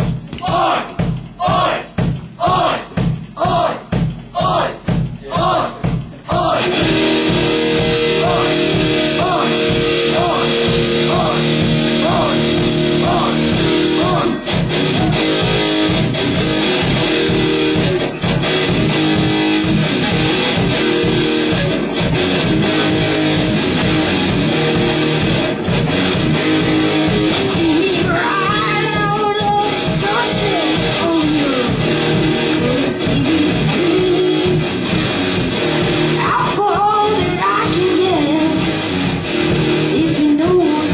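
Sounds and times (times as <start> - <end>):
bass guitar: 4.5 - 40.9
live rock band playing: 6.0 - 40.9
electric guitar: 6.5 - 40.9.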